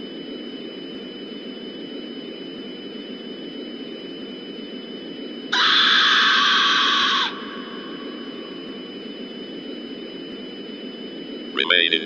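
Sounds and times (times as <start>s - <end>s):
thin high whines: 5.3s - 12.0s
broadcast static hiss: 11.4s - 12.0s.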